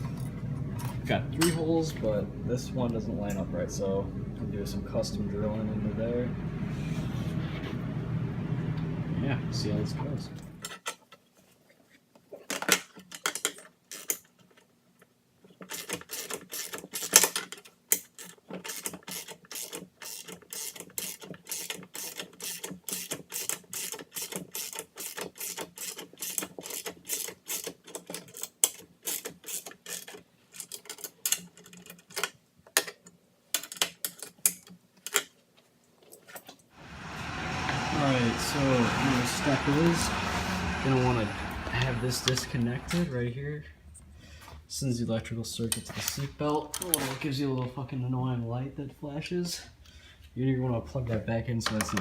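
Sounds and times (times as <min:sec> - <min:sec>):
ratchet wrench clicking: 0:18.0 - 0:27.7.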